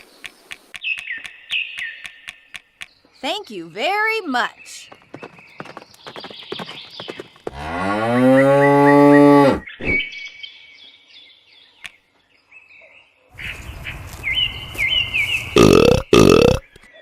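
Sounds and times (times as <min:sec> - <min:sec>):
cow mooing: 0:07.5 - 0:09.6.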